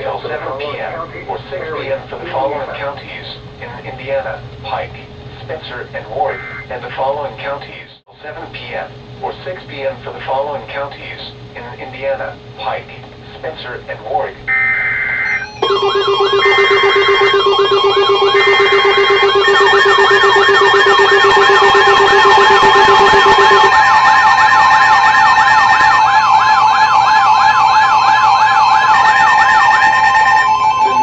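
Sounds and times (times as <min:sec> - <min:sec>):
screeching data tones: 0:06.2 - 0:06.7, 0:14.5 - 0:26.1, 0:27.9 - 0:31.0
two-tone attention signal: 0:14.5 - 0:26.0, 0:28.9 - 0:31.0
siren-like wail: 0:14.5 - 0:31.0.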